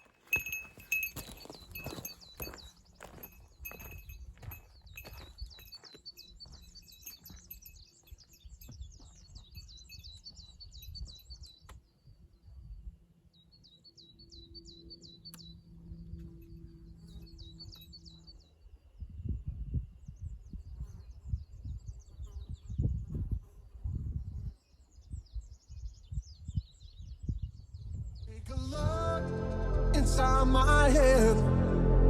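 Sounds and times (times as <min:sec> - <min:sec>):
songbird singing: 0:00.0 - 0:23.2
low rumble: 0:28.3 - 0:32.0.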